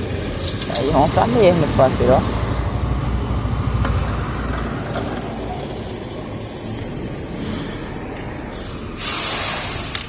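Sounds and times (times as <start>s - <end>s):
motorcycle engine growling: 0.0s - 6.8s
sharp hiss of air: 8.9s - 10.0s.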